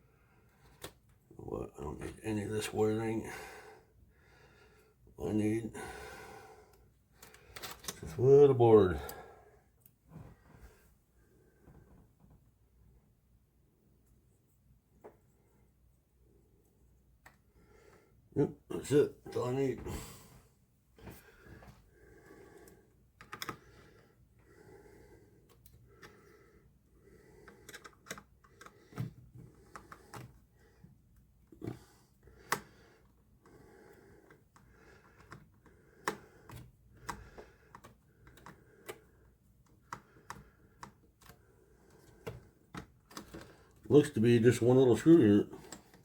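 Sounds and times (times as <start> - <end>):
hands tapping plastic parts: 23.2 - 23.7, 27.4 - 30.4, 34.3 - 43.9.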